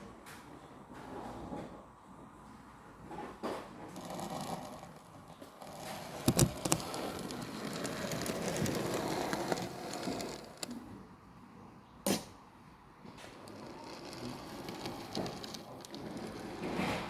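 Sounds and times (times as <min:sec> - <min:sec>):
model train rattling on track: 0:06.2 - 0:10.7, 0:13.3 - 0:17.0.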